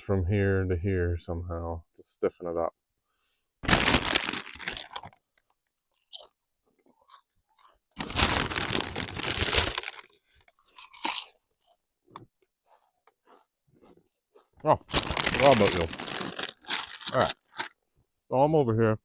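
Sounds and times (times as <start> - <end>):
crunching and rustling: 3.6 - 5.2, 7.0 - 11.8, 14.8 - 17.7.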